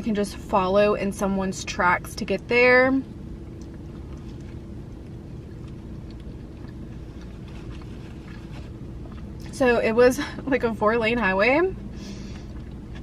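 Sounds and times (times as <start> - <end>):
steady low hum: 0.0 - 13.0
faint chewing mouth clicks: 3.5 - 9.5.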